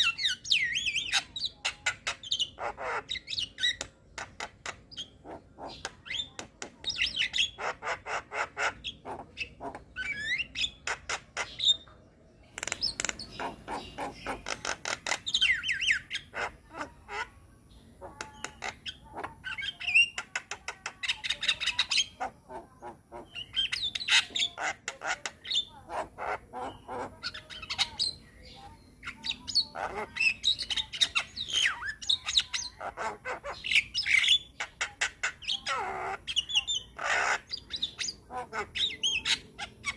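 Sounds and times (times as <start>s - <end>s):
myna chattering song: 0.0s - 39.9s.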